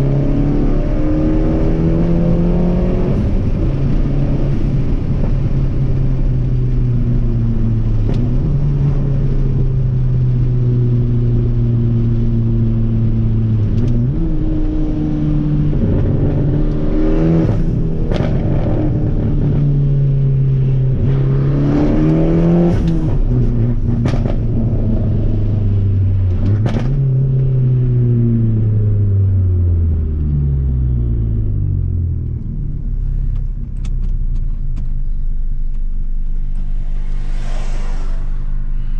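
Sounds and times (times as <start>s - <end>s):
car engine from inside: 0.0s - 38.9s
wind noise: 36.3s - 38.9s.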